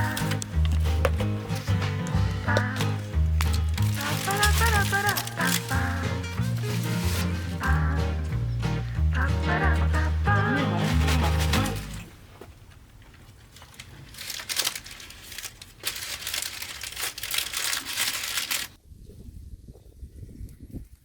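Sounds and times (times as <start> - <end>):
wrapper crinkling: 0.0 - 8.0, 10.0 - 12.2, 13.0 - 18.8.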